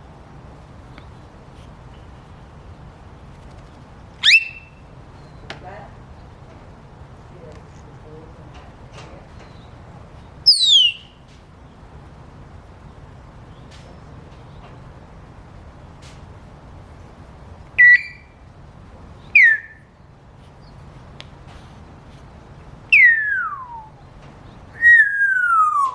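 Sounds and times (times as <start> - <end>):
parrot whistling: 4.2 - 4.8, 10.4 - 11.2, 17.8 - 18.4, 19.4 - 19.9, 22.9 - 23.9, 24.8 - 25.9.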